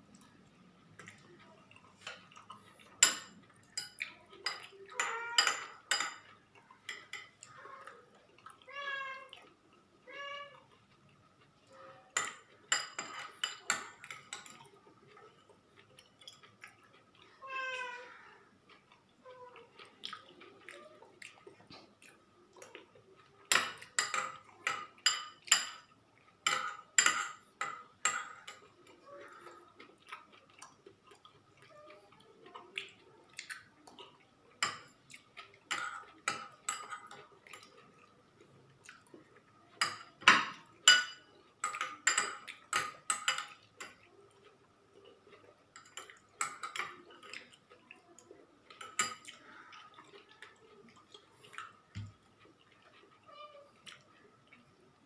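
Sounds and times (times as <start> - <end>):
chewing: 0.1 - 17.4, 18.0 - 55.0
utensils clinking on a plate: 1.0 - 8.0, 12.0 - 14.8, 22.6 - 30.5, 34.6 - 38.0, 39.7 - 44.1, 45.0 - 47.8, 48.6 - 54.2.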